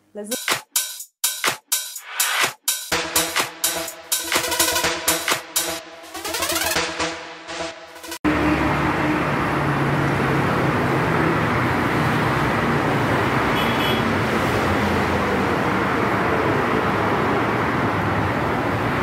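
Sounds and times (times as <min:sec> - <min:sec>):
road traffic rumble: 0:08.2 - 0:19.0.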